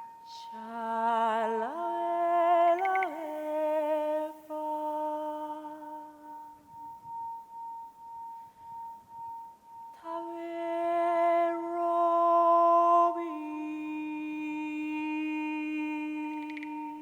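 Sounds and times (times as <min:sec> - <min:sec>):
steady high pulsing tone: 0:00.0 - 0:11.0.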